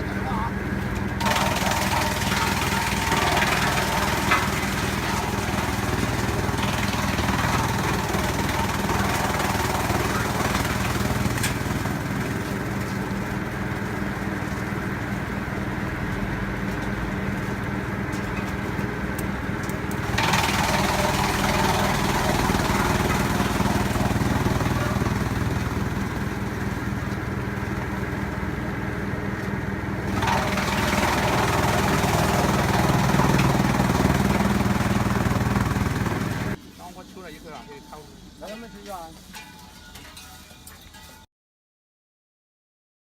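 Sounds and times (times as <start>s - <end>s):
wood chipper engine running: 0.0s - 36.6s
rushing grinding noise: 1.2s - 13.4s, 20.0s - 27.2s, 30.1s - 36.6s.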